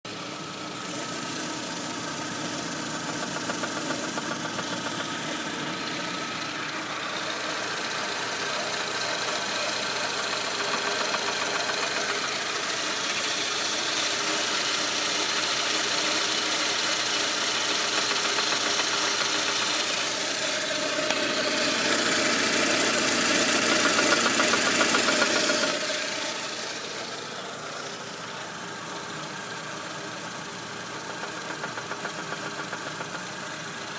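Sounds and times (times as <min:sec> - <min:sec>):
petrol engine running with a knock: 0:01.7 - 0:13.7, 0:15.2 - 0:27.6, 0:29.8 - 0:33.9.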